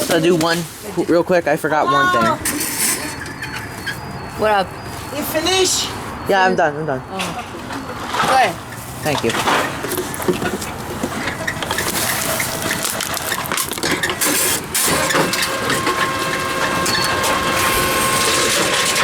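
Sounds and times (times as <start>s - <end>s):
machine motor hum and whine: 14.9s - 19.0s.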